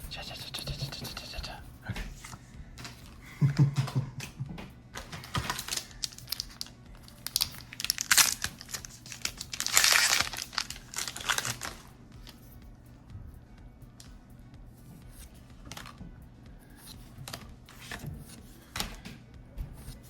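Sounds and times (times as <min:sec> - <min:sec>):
wrapper crinkling and tearing: 0:05.0 - 0:12.4.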